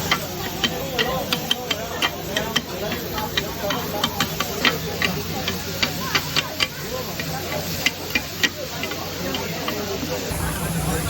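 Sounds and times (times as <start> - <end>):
background chatter: 0.0 - 11.0
steady hiss: 10.3 - 11.0.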